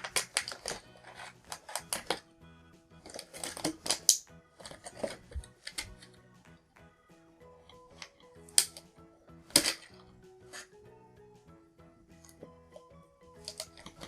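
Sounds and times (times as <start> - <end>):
plastic parts clicking: 0.0 - 2.2, 3.0 - 6.0, 13.4 - 14.0
background music: 0.0 - 14.0.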